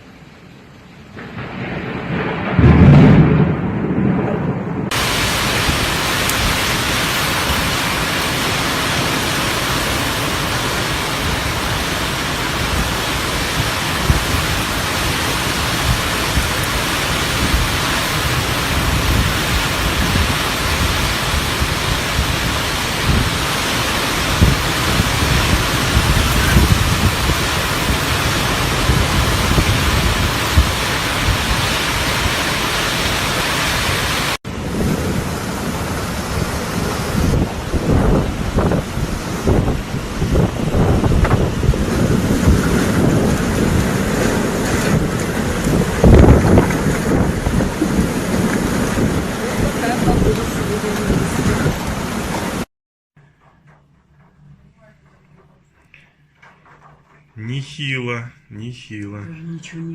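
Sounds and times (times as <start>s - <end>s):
heavy rain pouring: 0.0s - 52.7s.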